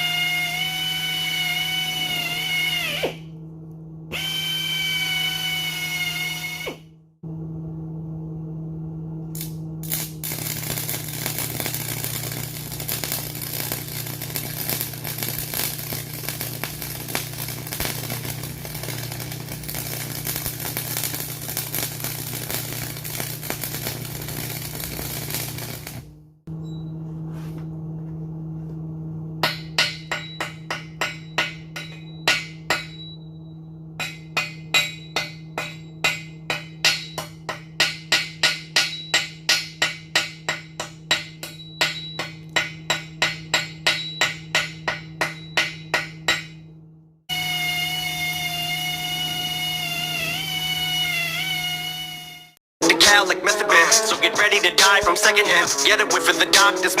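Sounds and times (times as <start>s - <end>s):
welder low hum: 0.0s - 38.1s, 39.9s - 57.0s
arc welding crackle: 9.4s - 26.2s, 47.3s - 52.6s.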